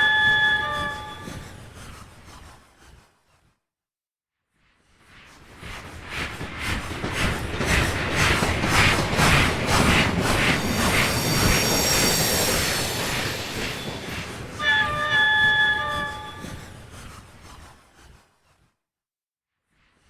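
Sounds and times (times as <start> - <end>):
steam whistle: 0.0 - 1.6, 10.5 - 16.8
wheels squealing on rails: 0.0 - 2.5, 7.2 - 17.8
steam locomotive chuffing: 6.2 - 17.6.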